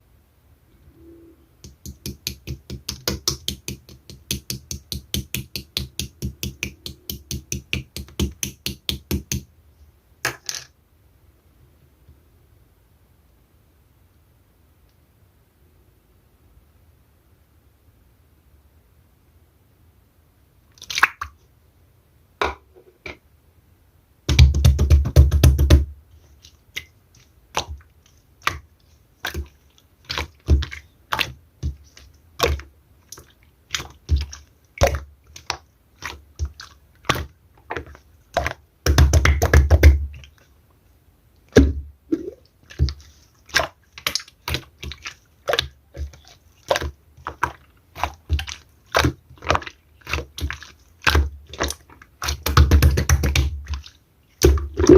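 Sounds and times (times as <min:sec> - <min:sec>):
slime popping and crackling: 0:26.8 - 0:40.4, 0:41.5 - 0:54.9.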